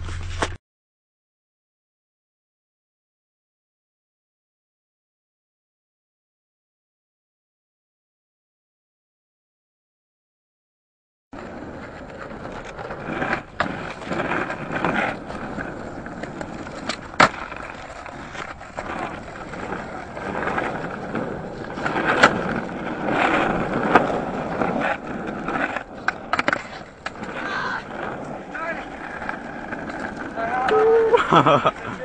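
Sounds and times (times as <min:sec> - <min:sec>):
skateboard clacking on ground: 0:11.4 - 0:32.0
skateboard wheels rolling on pavement: 0:11.4 - 0:32.0.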